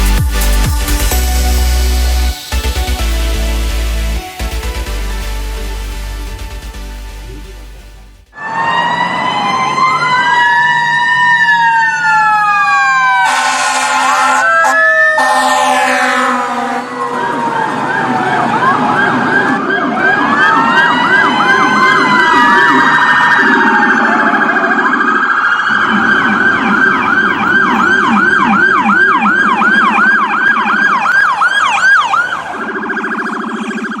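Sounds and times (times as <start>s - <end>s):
siren wailing glides: 8.3s - 34.0s
siren fast yelp: 8.4s - 34.0s
low pulsing tone: 25.7s - 29.9s.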